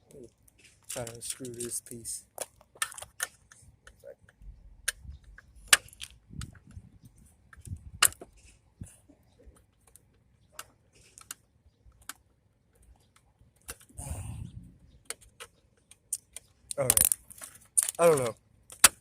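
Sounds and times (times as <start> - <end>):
metal parts clicking and tapping: 0.6 - 6.8, 15.0 - 19.0.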